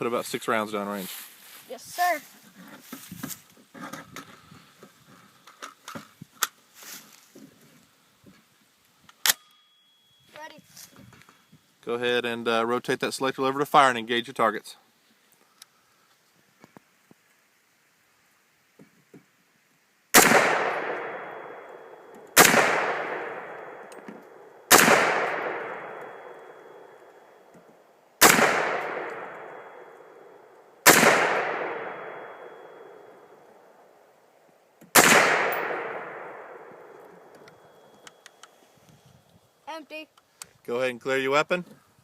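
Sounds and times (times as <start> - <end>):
rifle shots with echo: 20.2 - 27.0, 28.2 - 33.2, 34.9 - 37.9.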